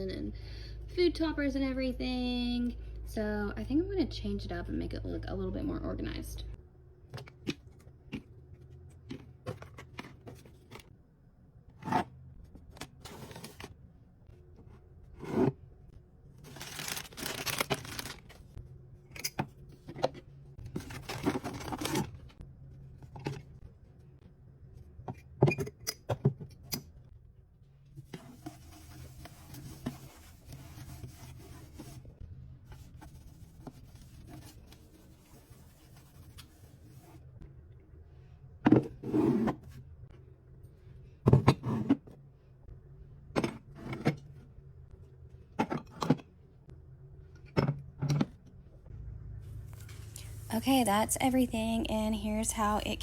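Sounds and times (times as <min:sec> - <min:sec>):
packaging tearing and rustling: 0:16.4 - 0:18.5.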